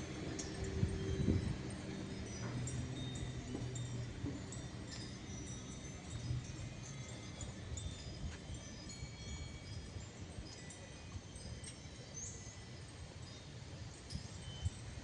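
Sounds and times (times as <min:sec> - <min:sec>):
wind chimes tinkling: 0:00.0 - 0:15.0.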